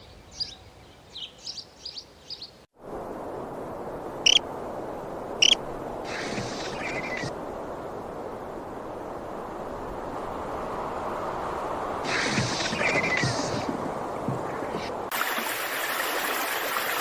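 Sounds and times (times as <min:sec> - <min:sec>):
sharp high-pitched calls: 0:05.4 - 0:05.6
small bird chirping: 0:05.4 - 0:07.3.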